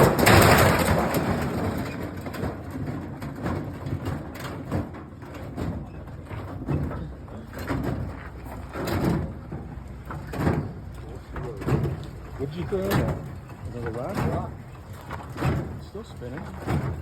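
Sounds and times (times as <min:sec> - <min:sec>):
objects clattering in washing machine drum: 0:00.0 - 0:17.0
washing machine motor hum: 0:05.8 - 0:17.0.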